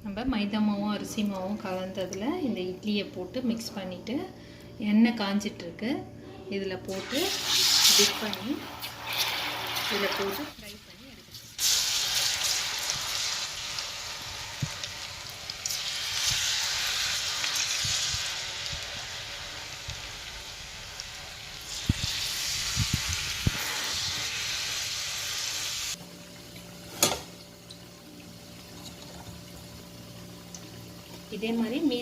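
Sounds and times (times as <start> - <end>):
food sizzling in hot oil: 6.9 - 26.0.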